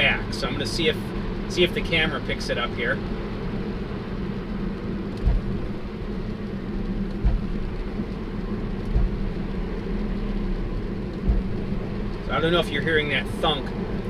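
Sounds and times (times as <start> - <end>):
road rumble in car cabin: 0.0 - 14.0
dull thunks from rear: 5.2 - 5.8, 7.2 - 7.8, 8.9 - 9.3, 11.2 - 11.8.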